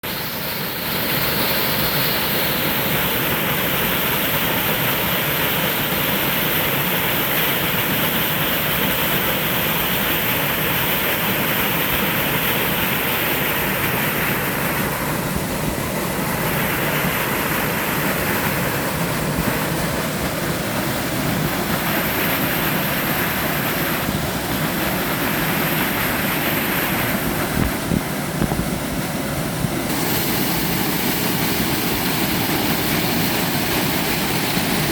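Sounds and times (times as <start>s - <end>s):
waterfall pouring and splashing: 0.0s - 34.9s.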